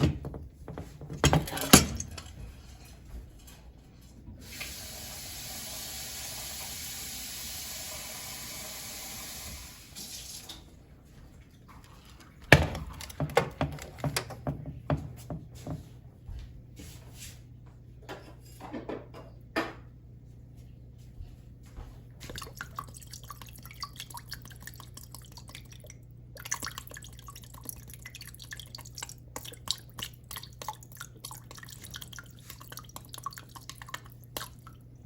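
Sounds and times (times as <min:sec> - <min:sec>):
objects clinking and knocking: 0:00.0 - 0:02.4, 0:12.5 - 0:15.8
water running from tap: 0:04.4 - 0:10.7.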